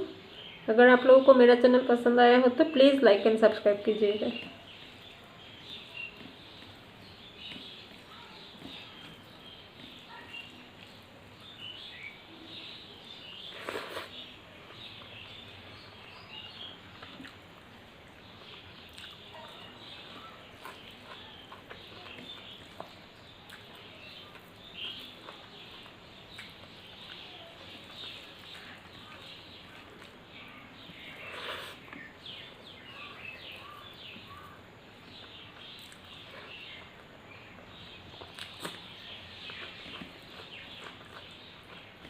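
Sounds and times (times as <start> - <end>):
birds chirping: 0.0 - 42.0.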